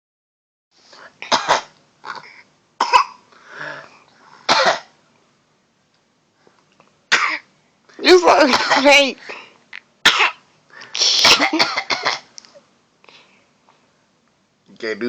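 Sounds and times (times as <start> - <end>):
person coughing: 1.2 - 2.2, 2.8 - 3.2, 4.5 - 4.9, 8.4 - 9.0, 11.0 - 12.3.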